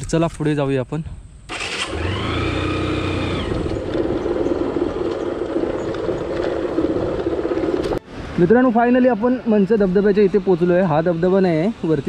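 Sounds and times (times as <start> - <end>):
motorcycle engine running: 1.8 - 8.0.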